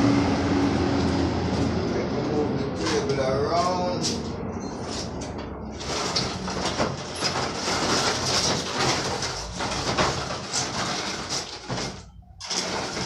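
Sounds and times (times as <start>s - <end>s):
table scraping on floor: 4.8s - 13.0s.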